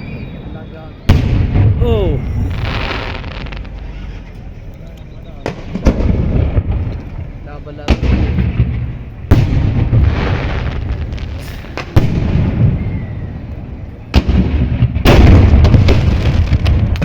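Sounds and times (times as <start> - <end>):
low rumble: 0.0 - 10.1
fireworks booming: 0.0 - 17.0.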